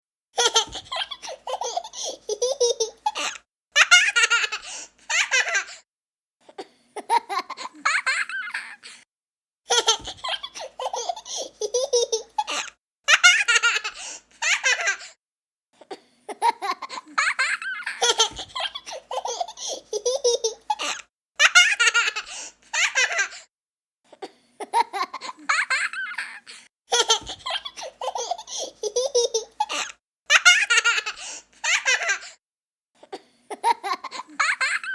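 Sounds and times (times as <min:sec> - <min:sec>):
child giggling: 0:00.4 - 0:05.7, 0:09.7 - 0:15.0, 0:16.3 - 0:23.4, 0:24.6 - 0:32.3, 0:33.5 - 0:34.9.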